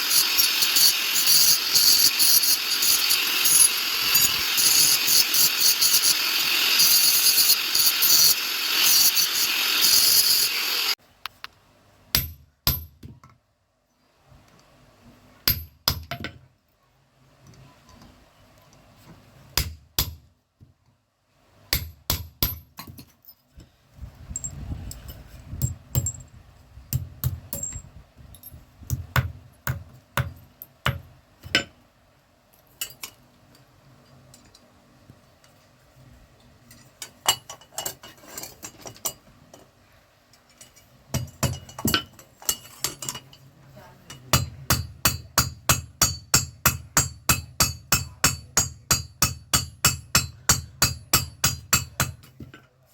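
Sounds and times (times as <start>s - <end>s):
hammer striking iron on anvil: 12.1s - 12.9s, 21.7s - 22.9s, 28.9s - 31.7s, 41.1s - 43.1s, 44.3s - 52.3s.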